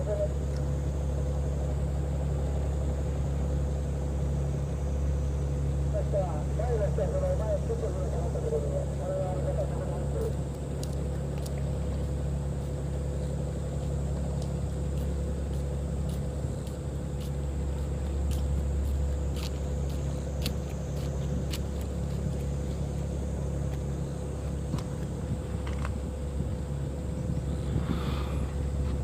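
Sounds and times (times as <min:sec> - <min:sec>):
boat diesel engine droning: 0:00.0 - 0:29.0.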